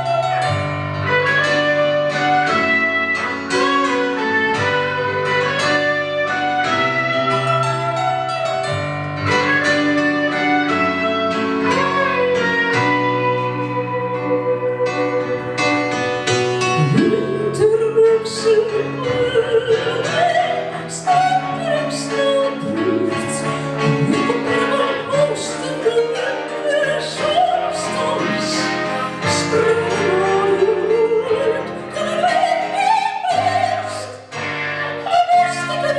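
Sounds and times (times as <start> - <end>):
guitar: 0.0 - 35.9
piano: 0.0 - 35.9
woman singing operatically: 16.8 - 34.2, 34.8 - 35.9.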